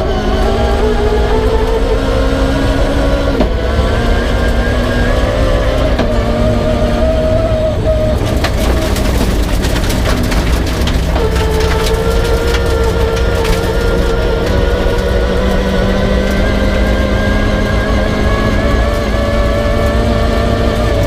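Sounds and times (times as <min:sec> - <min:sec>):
rally car engine revving: 0:00.0 - 0:21.0
stones hitting a car: 0:08.2 - 0:14.1.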